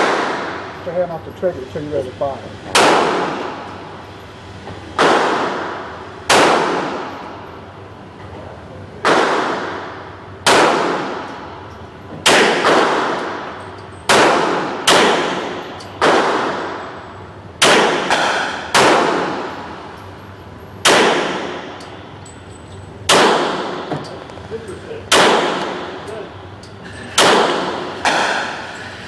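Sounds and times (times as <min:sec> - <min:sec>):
pistol shots with echo: 0:00.0 - 0:00.7, 0:02.8 - 0:03.6, 0:05.0 - 0:07.3, 0:09.0 - 0:11.5, 0:12.2 - 0:16.9, 0:17.6 - 0:19.7, 0:20.8 - 0:21.8, 0:23.1 - 0:24.0, 0:25.1 - 0:26.0, 0:27.2 - 0:28.6.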